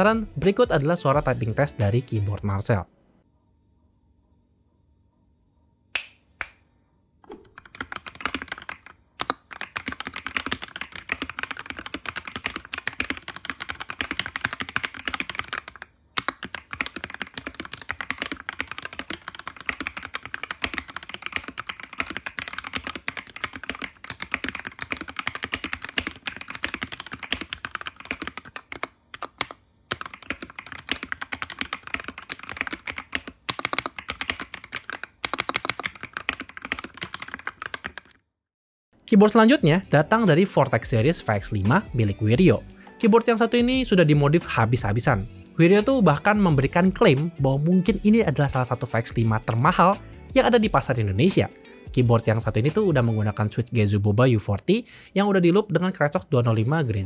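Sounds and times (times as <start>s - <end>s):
fast mechanical keyboard typing: 7.5s - 38.2s.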